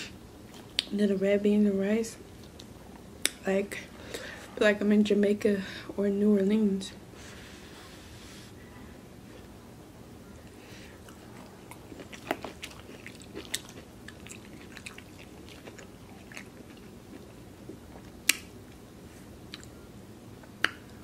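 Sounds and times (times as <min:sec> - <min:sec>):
person chewing food: 0:10.9 - 0:18.5.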